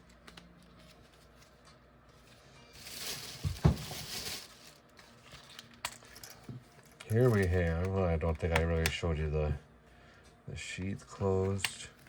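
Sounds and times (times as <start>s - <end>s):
rustling of tools: 0.0s - 7.9s.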